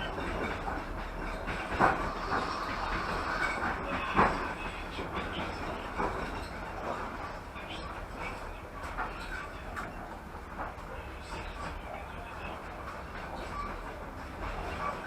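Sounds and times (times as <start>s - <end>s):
wheels knocking on rail joints: 0.0s - 9.9s
train wheels rumbling on rail: 0.0s - 15.0s.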